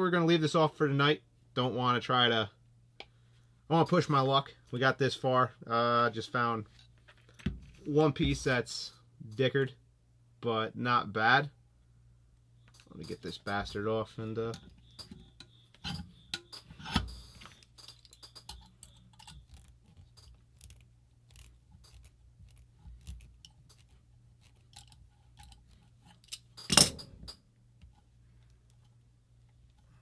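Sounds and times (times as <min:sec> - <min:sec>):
metal parts and tools clinking: 0:12.7 - 0:20.8, 0:23.2 - 0:27.5.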